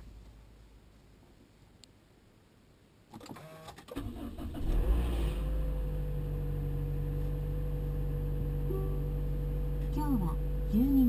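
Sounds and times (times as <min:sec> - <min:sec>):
car engine idling: 0:04.4 - 0:11.0
thin steady whine: 0:05.7 - 0:11.0.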